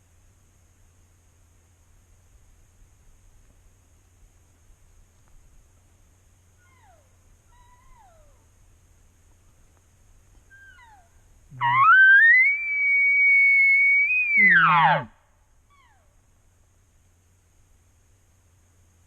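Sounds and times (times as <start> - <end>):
faint short falling mews: 10.5 - 15.1
elk bugling: 10.5 - 15.9.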